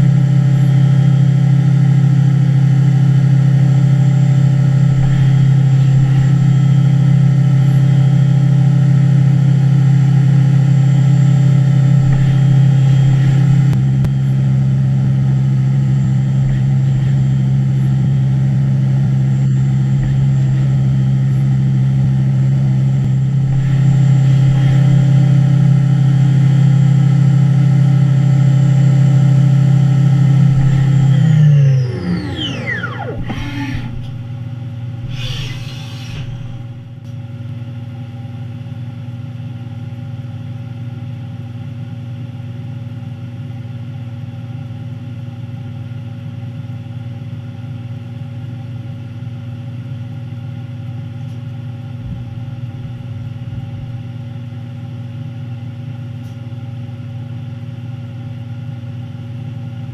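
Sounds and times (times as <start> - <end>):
milling machine hum and whine: 0.0 - 37.4.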